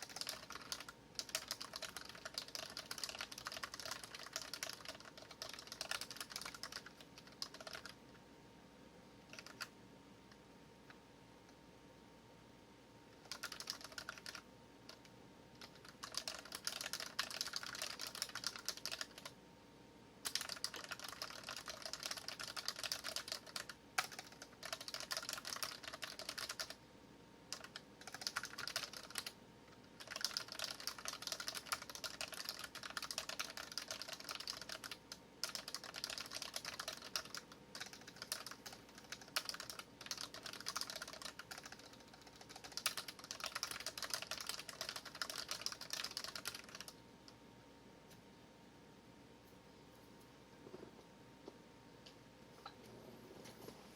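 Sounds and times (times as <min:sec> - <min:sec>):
mechanical keyboard typing: 0:00.0 - 0:08.0, 0:09.3 - 0:09.7, 0:13.2 - 0:19.4, 0:20.2 - 0:26.8, 0:27.5 - 0:47.0.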